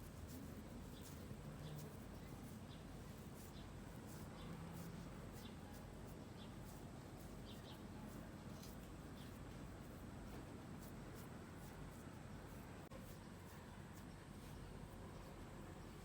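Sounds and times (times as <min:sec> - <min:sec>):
low background hum: 0:00.0 - 0:16.0
faint bird chirps: 0:05.3 - 0:09.4.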